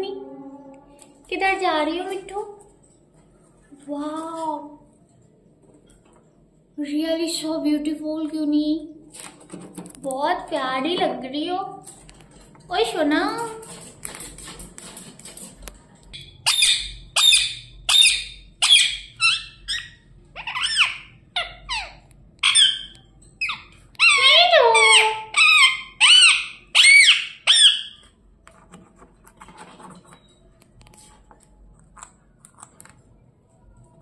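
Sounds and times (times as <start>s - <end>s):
parrot shrill calls: 16.2s - 28.0s.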